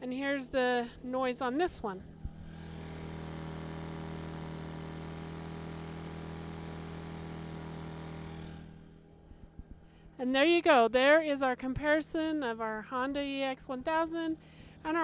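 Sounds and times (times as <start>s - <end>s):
generator humming: 0.0s - 10.4s, 12.2s - 15.0s.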